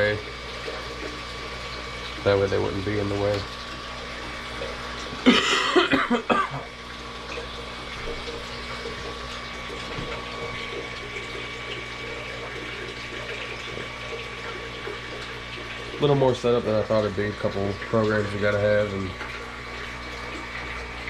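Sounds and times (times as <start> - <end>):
three d printer humming: 0.0 - 21.0
person coughing: 5.2 - 6.7.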